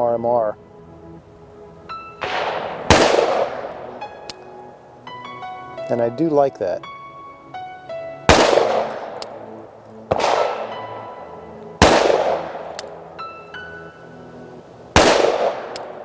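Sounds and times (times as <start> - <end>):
light background music: 0.0 - 16.0
pistol shots with echo: 2.2 - 4.4, 8.3 - 9.4, 10.1 - 11.2, 11.8 - 13.0, 15.0 - 16.0.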